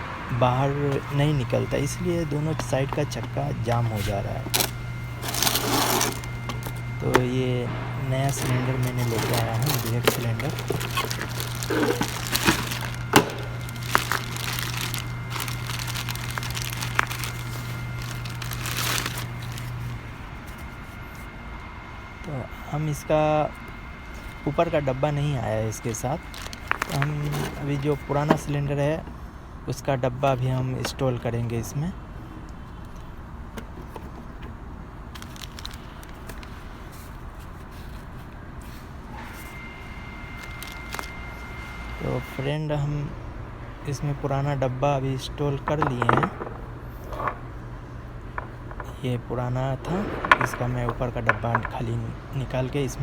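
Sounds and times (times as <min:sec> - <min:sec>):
low background rumble: 0:00.0 - 0:39.0
packaging crinkling: 0:00.9 - 0:21.3, 0:25.7 - 0:28.5, 0:35.1 - 0:38.2, 0:40.3 - 0:41.6.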